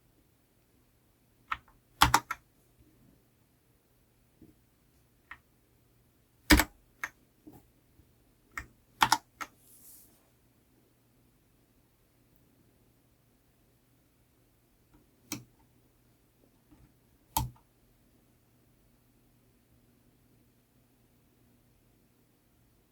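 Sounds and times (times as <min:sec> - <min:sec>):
mechanical keyboard key clicks: 0:01.5 - 0:02.4, 0:06.5 - 0:06.7.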